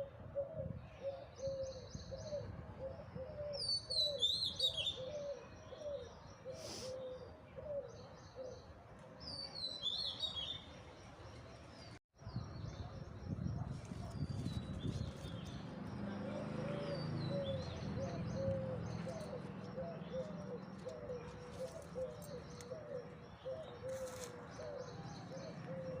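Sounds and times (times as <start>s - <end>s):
low cooing bird call: 0.0s - 8.7s, 13.6s - 26.0s
small birds chirping: 9.5s - 26.0s.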